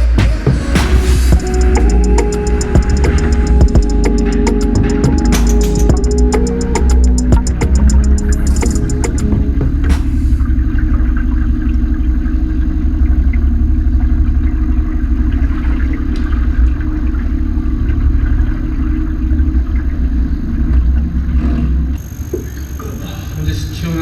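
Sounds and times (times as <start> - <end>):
loud low rumble: 0.0 - 11.6.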